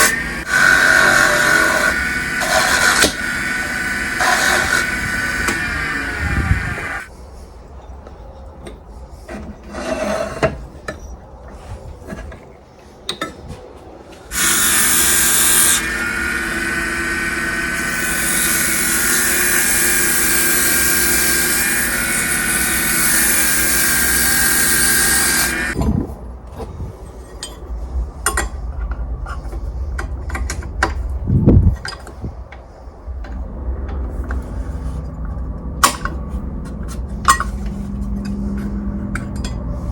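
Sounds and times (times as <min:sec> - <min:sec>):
wood lathe motor whine: 0:00.0 - 0:07.1, 0:14.3 - 0:25.8.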